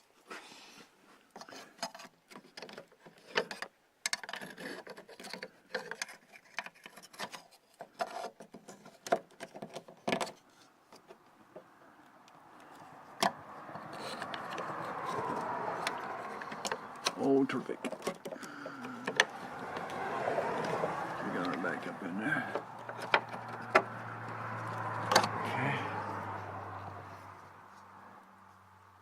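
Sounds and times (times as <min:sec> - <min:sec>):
hand tools clicking and knocking: 0:12.6 - 0:25.4.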